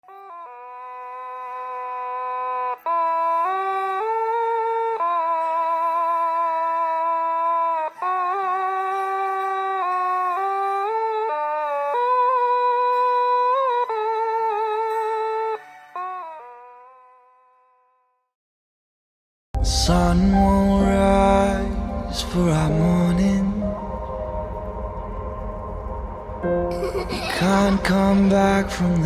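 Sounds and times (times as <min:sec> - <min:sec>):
slow sustained chords: 0:19.6 - 0:29.0.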